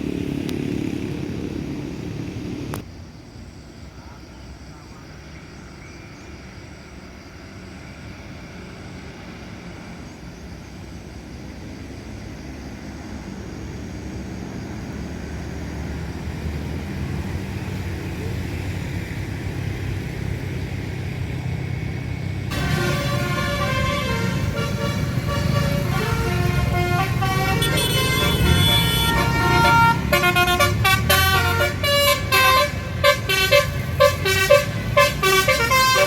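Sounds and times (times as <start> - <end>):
bus engine rumbling: 0.0 - 36.0.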